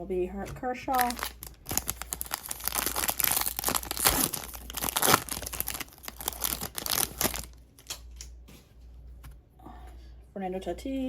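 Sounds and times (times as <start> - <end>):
plastic wrapper crinkling and tearing: 0.9 - 8.4.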